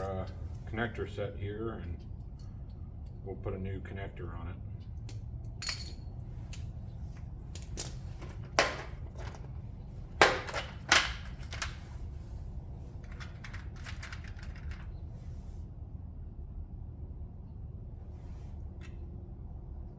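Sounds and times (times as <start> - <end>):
steady low hum: 0.0 - 19.9
small parts and tools clacking: 4.8 - 9.6, 13.0 - 15.0.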